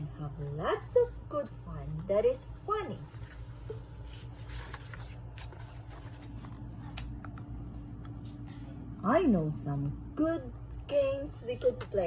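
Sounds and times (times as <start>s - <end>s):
book page turning: 3.1s - 7.3s
paper rubbing and scratching: 4.1s - 6.6s.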